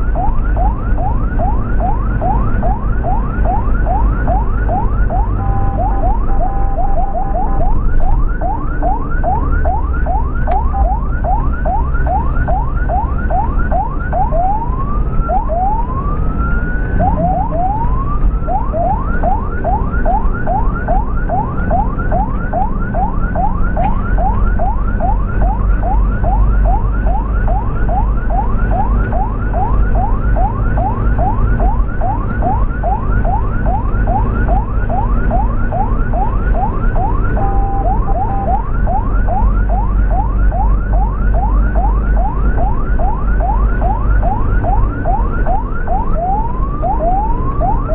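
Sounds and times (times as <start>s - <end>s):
ambulance siren yelping: 0.0s - 47.9s
low vehicle rumble: 0.0s - 47.9s.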